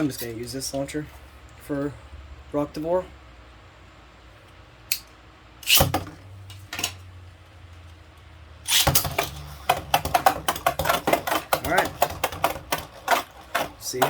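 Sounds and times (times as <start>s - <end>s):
spinning top launch: 8.7s - 9.5s
spinning tops whirring: 8.7s - 14.0s.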